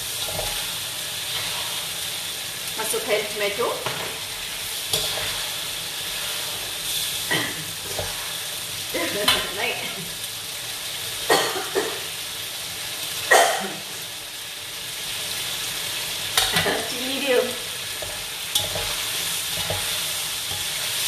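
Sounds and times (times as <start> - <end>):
spatula scraping pan: 0.0 - 2.0, 3.0 - 9.9, 16.4 - 21.0
chilli paste sizzling in oil: 0.0 - 21.0.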